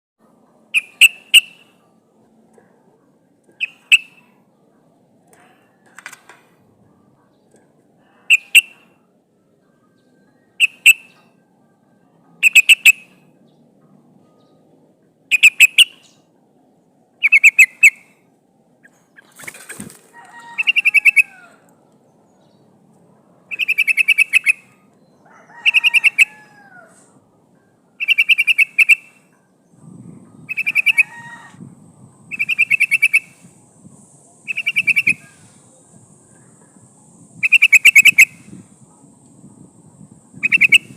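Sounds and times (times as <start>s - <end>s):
bird bubbly chattering: 40.4s - 40.9s.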